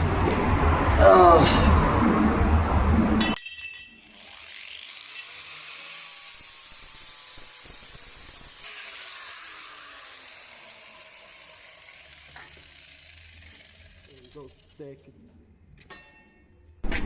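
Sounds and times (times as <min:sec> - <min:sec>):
arc welder crackling hiss: 0:05.2 - 0:14.0.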